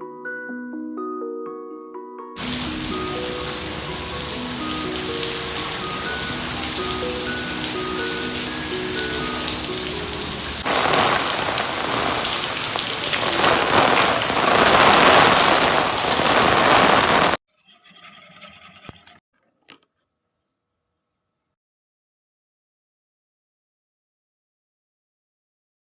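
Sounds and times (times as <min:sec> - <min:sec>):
soft background music: 0:00.0 - 0:10.6
heavy rain pouring: 0:02.4 - 0:17.4.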